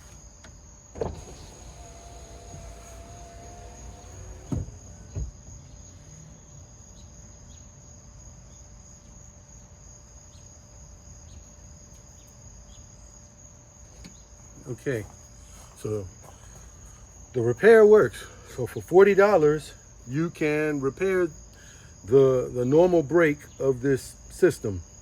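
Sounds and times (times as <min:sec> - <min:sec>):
crickets chirping: 0:00.0 - 0:25.0
power window motor running: 0:00.9 - 0:05.4.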